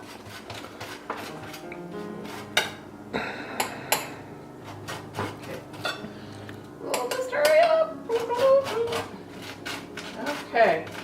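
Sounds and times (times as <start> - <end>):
metal utensils clinking on plates: 5.2 - 6.1.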